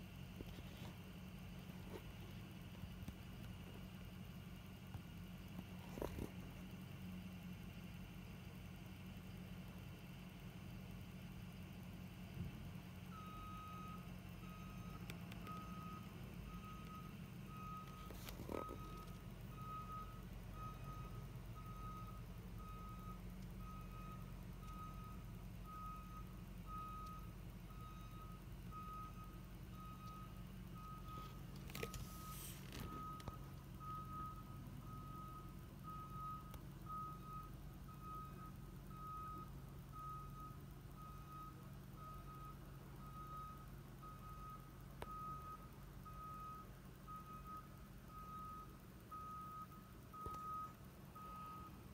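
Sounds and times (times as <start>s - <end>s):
back-up alarm beeping: 13.1s - 51.8s.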